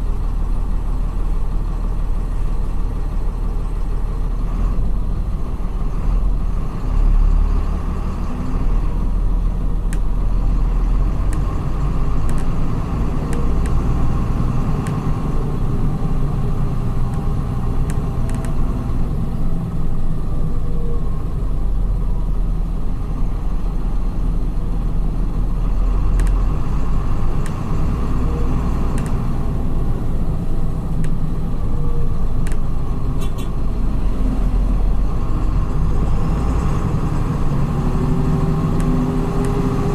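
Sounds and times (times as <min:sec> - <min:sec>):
diesel engine rumble: 0:00.0 - 0:39.9
light ticks: 0:09.9 - 0:10.1, 0:12.2 - 0:12.6, 0:26.1 - 0:26.4, 0:29.0 - 0:29.2, 0:31.0 - 0:31.2.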